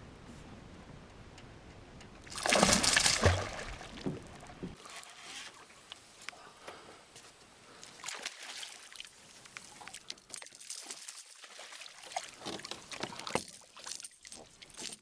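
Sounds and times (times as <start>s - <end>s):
water splashing and trickling: 2.2s - 6.0s, 7.7s - 15.0s.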